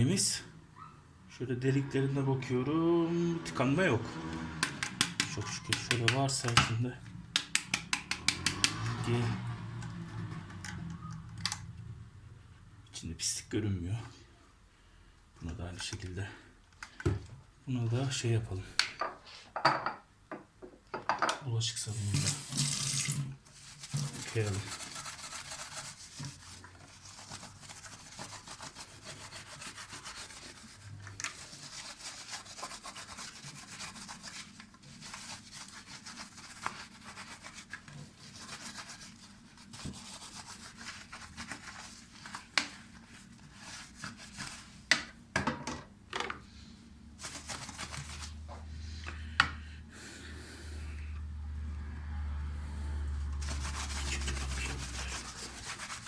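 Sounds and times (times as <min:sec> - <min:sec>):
scratchy scrubbing: 0:23.5 - 0:44.9, 0:47.2 - 0:48.5, 0:53.4 - 0:56.0.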